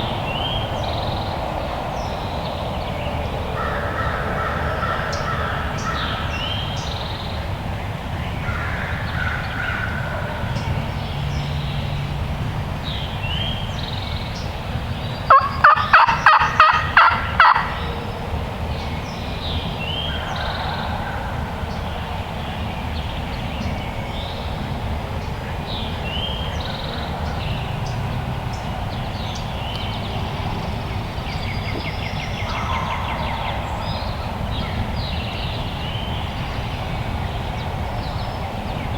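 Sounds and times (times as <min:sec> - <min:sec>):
songbirds singing: 0:00.0 - 0:38.9
turkey gobbling: 0:15.3 - 0:18.0.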